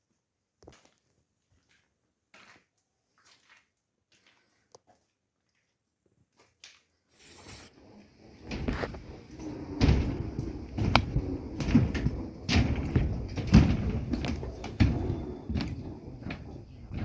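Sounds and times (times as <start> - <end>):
low rumbling handling noise: 8.4 - 17.0
irregular knocks and thumps: 8.5 - 17.0.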